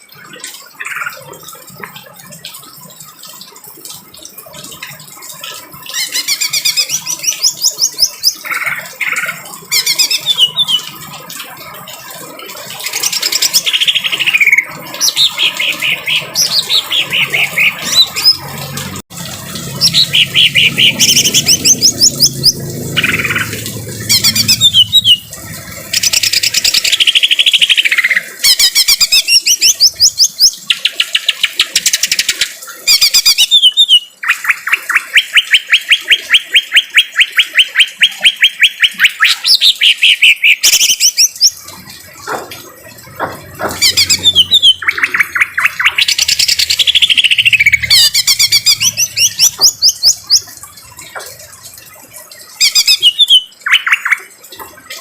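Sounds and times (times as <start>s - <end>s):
bird singing fast trills: 6.0s - 10.9s, 19.8s - 31.4s, 43.6s - 50.6s, 52.6s - 54.3s
bird harsh chattering: 43.2s - 50.6s.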